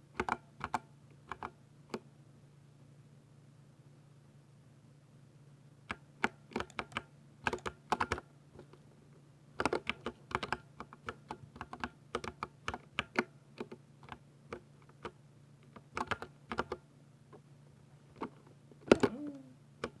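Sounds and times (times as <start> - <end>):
faint low hum: 0.1 - 20.0
keyboard typing: 18.9 - 20.0.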